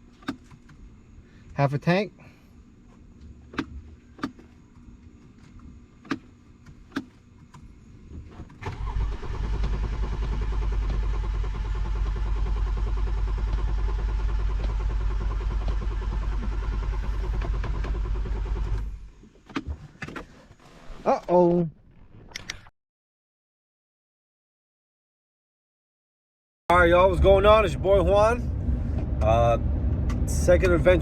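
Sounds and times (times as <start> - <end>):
car engine cranking: 0.0 - 0.8, 8.3 - 20.7.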